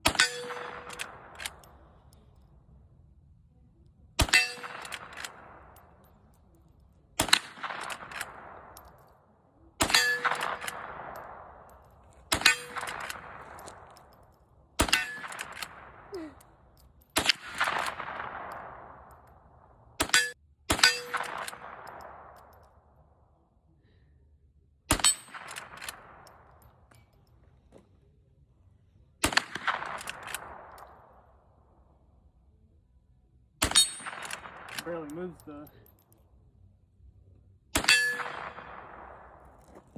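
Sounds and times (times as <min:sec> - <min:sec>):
rifle shots: 0:00.0 - 0:01.9, 0:04.2 - 0:06.1, 0:07.2 - 0:09.0, 0:09.8 - 0:14.2, 0:14.8 - 0:16.3, 0:17.2 - 0:22.6, 0:24.9 - 0:26.6, 0:29.2 - 0:31.2, 0:33.6 - 0:35.6, 0:37.8 - 0:39.9
steel target clanging: 0:00.1 - 0:01.2, 0:09.8 - 0:11.2, 0:12.3 - 0:13.4, 0:14.8 - 0:15.6, 0:20.0 - 0:21.5, 0:37.8 - 0:38.8.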